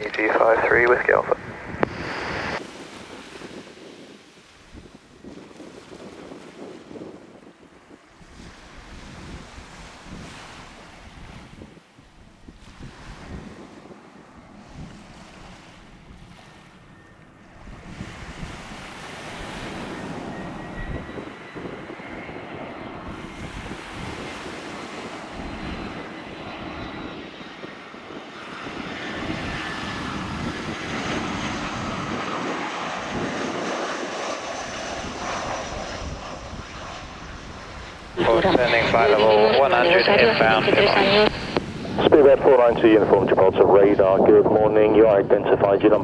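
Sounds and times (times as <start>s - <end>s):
high whine falling in pitch: 0.0s - 2.6s, 38.2s - 43.4s
jet engines of landing airliner: 0.0s - 46.0s.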